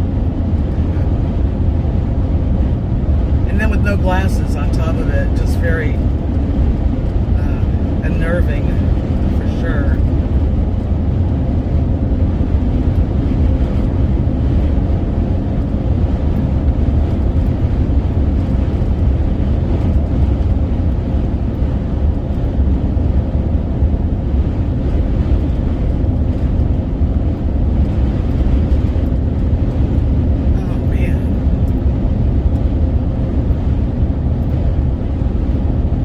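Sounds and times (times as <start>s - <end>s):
road and wind noise inside vehicle: 0.0s - 36.0s.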